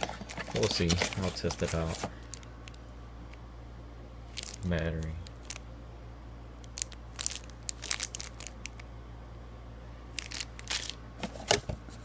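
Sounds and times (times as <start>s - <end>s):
plastic packaging crinkling: 0.0s - 2.8s, 4.3s - 5.6s, 6.6s - 8.9s, 10.1s - 11.0s
steady low hum: 0.0s - 12.0s.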